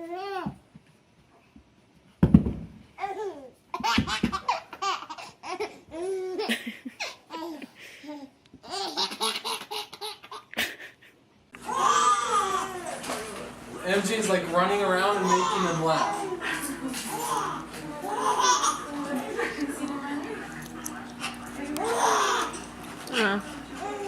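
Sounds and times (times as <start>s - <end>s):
thump: 2.2s - 2.8s
baby laughing: 3.0s - 11.0s, 15.1s - 19.6s.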